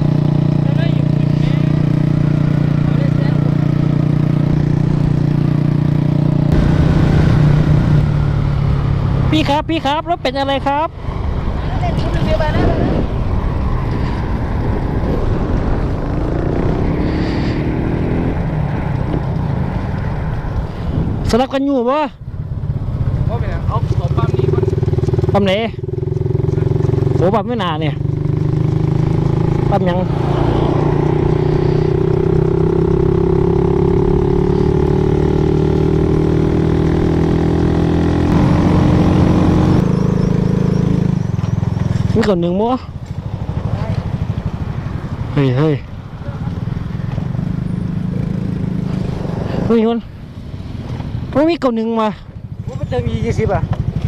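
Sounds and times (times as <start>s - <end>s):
road noise: 0.0s - 54.0s
vehicle engine: 0.0s - 54.0s
wind on microphone: 6.5s - 8.4s, 11.0s - 21.5s.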